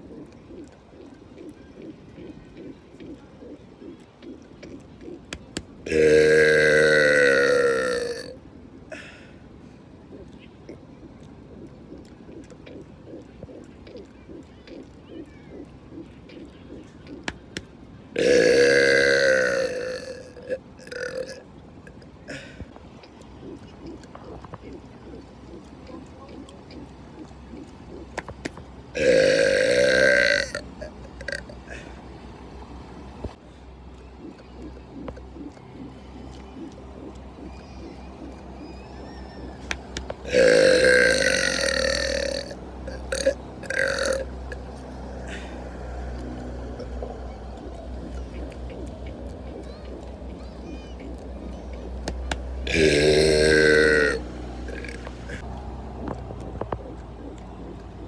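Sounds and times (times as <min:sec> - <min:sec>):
man burping: 0:05.9 - 0:09.1, 0:18.2 - 0:21.4, 0:29.0 - 0:31.9, 0:40.2 - 0:44.3, 0:52.7 - 0:55.4.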